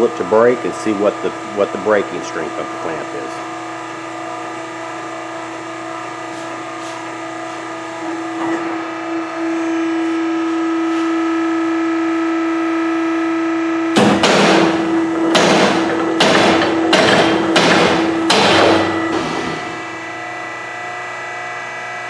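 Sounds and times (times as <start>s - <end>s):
test rig humming: 0.0s - 22.0s
loud bangs: 13.9s - 20.0s.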